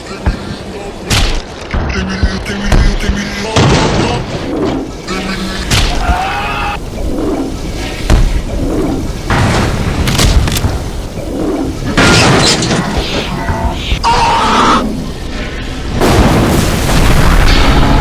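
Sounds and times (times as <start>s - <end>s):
deep booms and sharp hits: 8.0s - 14.1s, 15.8s - 18.0s
crashing burst: 15.1s - 18.0s.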